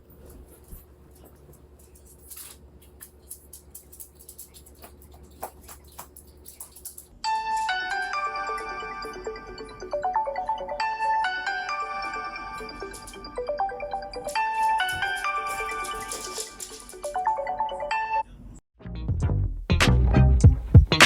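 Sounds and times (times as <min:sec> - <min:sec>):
phone ringtone melody: 0:07.3 - 0:16.3, 0:17.1 - 0:18.2.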